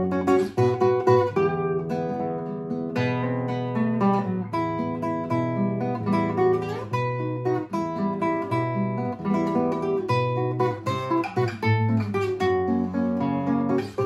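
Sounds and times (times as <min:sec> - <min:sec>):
acoustic guitar playing: 0:00.0 - 0:14.0.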